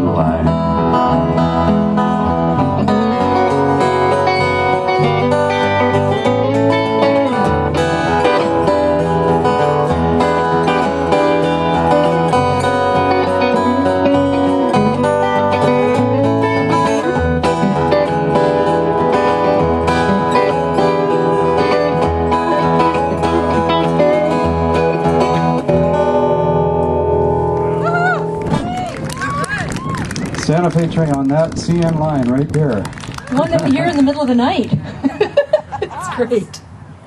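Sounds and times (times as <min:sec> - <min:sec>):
plucked acoustic guitar: 0:00.0 - 0:28.8
bass notes: 0:00.0 - 0:32.6.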